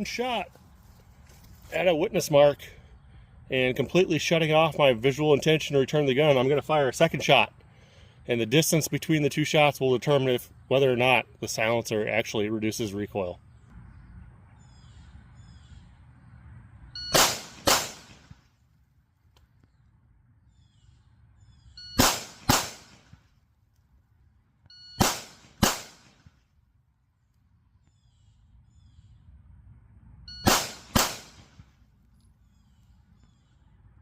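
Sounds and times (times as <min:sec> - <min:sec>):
pistol shots: 0:17.1 - 0:18.4, 0:22.0 - 0:23.2, 0:25.0 - 0:26.3, 0:30.4 - 0:31.6
shot timer beep: 0:24.7 - 0:25.0, 0:30.3 - 0:30.6.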